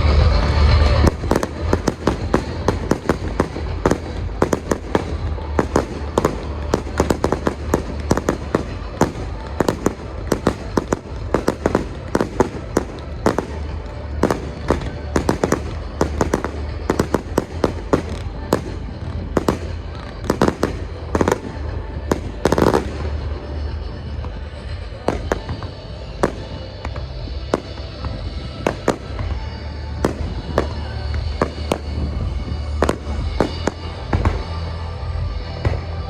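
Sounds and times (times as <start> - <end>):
heavy-bass music: 0.0 - 36.0
fireworks cracking and banging: 0.1 - 36.0.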